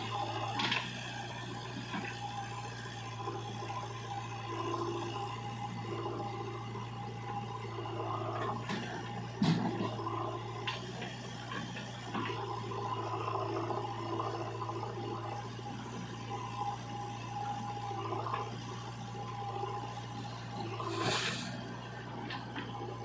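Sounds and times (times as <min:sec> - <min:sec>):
diesel engine running: 0:00.0 - 0:23.0
clunk: 0:08.4 - 0:10.0.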